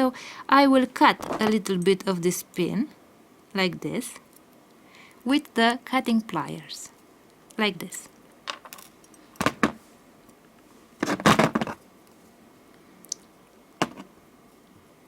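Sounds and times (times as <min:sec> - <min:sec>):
small metal parts clattering: 0:08.5 - 0:09.7.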